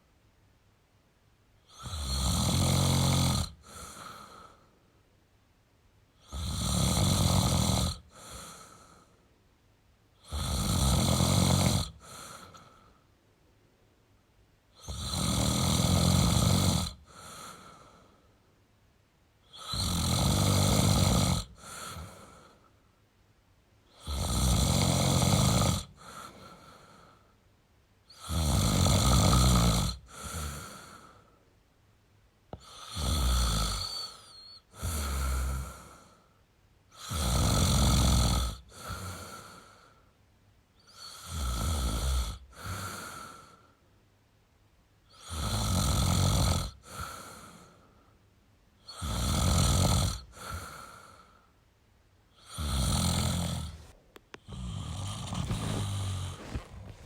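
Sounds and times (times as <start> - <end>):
man snoring: 1.7 - 4.6, 6.2 - 9.0, 10.2 - 12.8, 14.8 - 18.0, 19.5 - 22.5, 23.9 - 27.0, 28.1 - 31.2, 32.6 - 36.2, 36.9 - 39.8, 40.9 - 43.7, 45.1 - 47.8, 48.8 - 51.4, 52.4 - 57.0.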